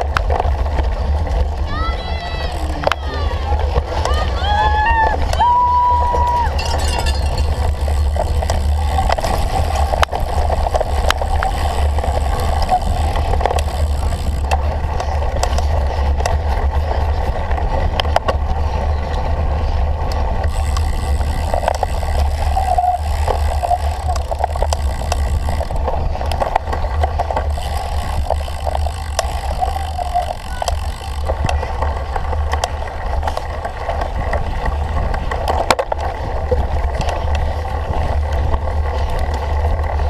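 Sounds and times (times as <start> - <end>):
bicycle tyres and frame rumbling: 0.0 - 40.0
rattling clicks and knocks: 6.2 - 16.6, 20.1 - 40.0.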